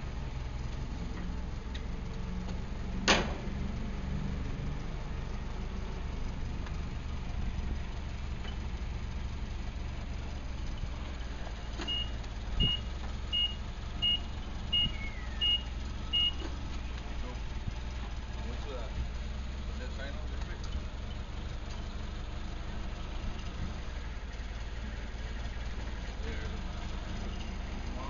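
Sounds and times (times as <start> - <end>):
forklift engine running: 0.0 - 28.0
thump: 3.0 - 3.6
backup alarm beeping: 11.9 - 16.4.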